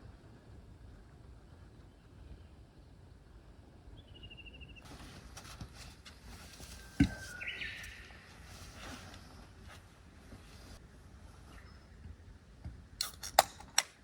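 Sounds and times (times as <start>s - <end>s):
faint bird trill: 6.8s - 8.3s.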